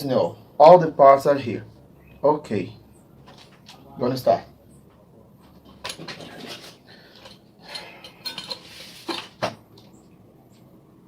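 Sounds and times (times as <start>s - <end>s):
small tools clicking and clattering: 5.5s - 9.9s.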